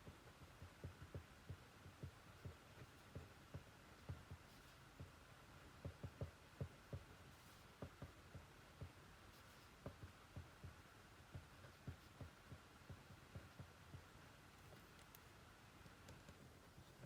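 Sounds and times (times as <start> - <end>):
soft low thumps: 9.6 - 15.0.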